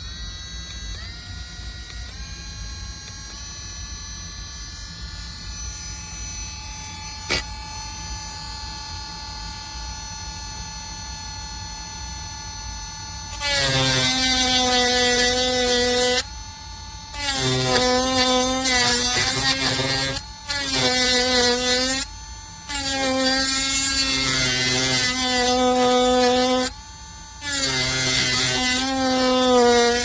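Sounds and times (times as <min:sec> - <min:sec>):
rotary tool motor whining: 0:13.3 - 0:30.0.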